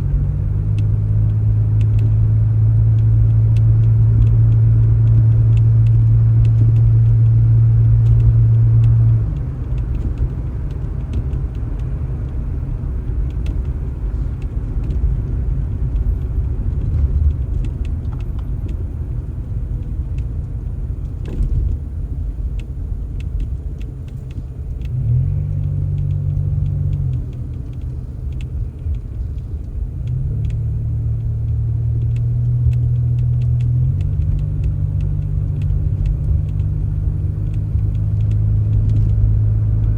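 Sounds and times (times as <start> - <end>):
vehicle engine rumbling: 0.0 - 39.9.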